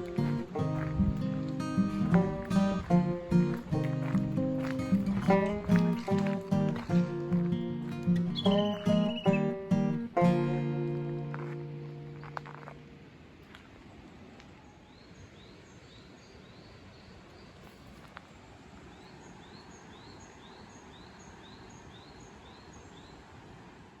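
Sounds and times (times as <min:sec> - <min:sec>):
faint forest ambience: 0:00.0 - 0:24.0
bird high rising call: 0:08.2 - 0:09.5.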